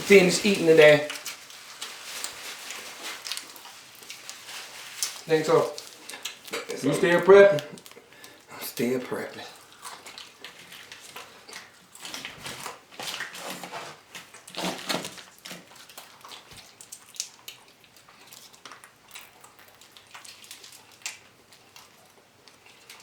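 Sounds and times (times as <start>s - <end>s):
food wrappers rustling: 0.0s - 23.0s.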